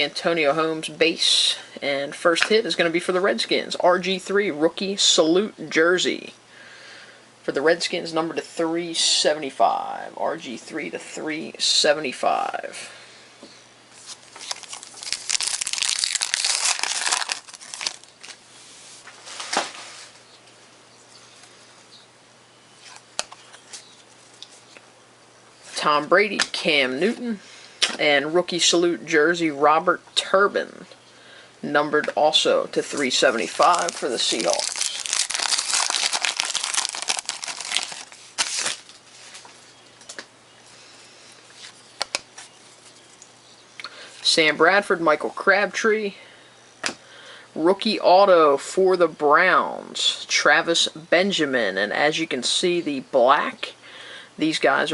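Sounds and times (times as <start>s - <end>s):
wrapper tearing and crinkling: 14.0s - 18.4s, 32.8s - 39.0s.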